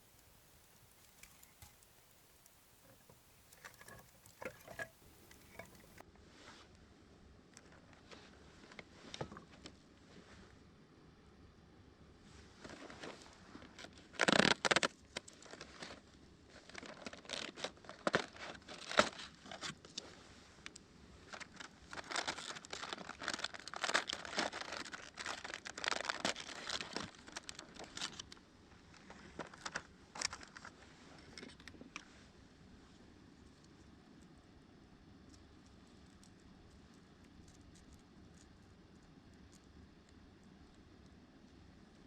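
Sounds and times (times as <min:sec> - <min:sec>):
crinkling and rustling: 0:00.0 - 0:06.0, 0:12.6 - 0:20.2, 0:21.2 - 0:32.2.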